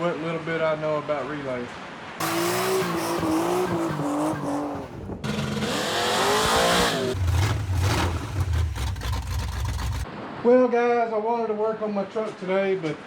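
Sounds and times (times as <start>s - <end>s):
car tires squealing: 2.2s - 10.0s
car engine rumble: 2.2s - 10.1s.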